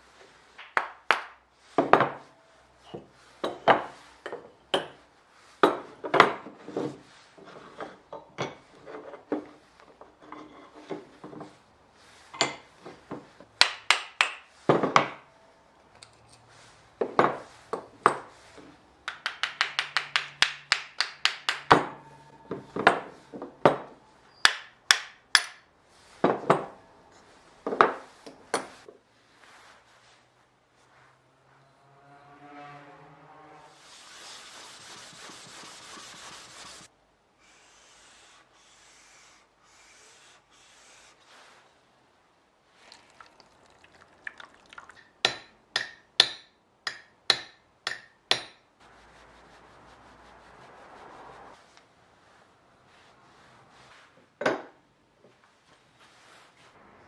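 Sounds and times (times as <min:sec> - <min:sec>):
small hammer tapping on wood plane: 0:19.1 - 0:21.9.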